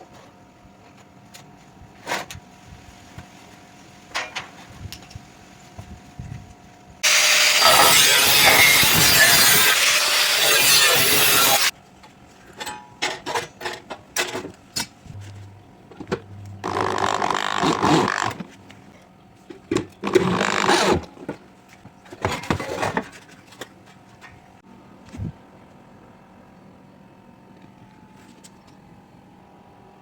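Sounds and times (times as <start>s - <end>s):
loud metalworking tool noise: 7.0s - 11.8s, 14.8s - 19.0s, 20.0s - 21.3s.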